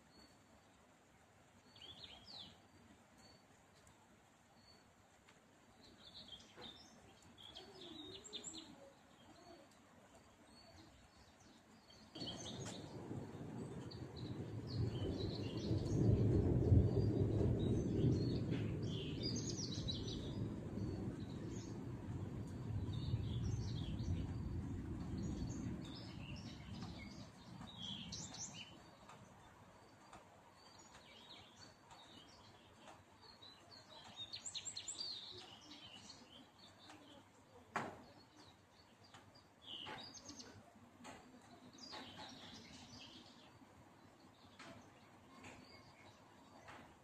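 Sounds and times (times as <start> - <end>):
small birds chirping: 0.0 - 47.0
low rumble: 12.8 - 27.2.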